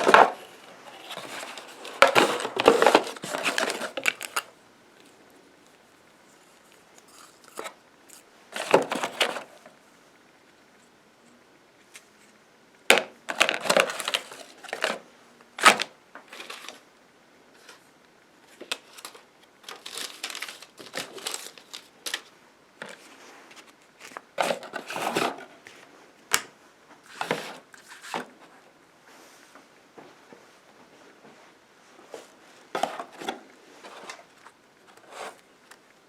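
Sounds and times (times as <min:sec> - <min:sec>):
material crinkling and crunching: 0:00.0 - 0:05.2, 0:18.5 - 0:25.6.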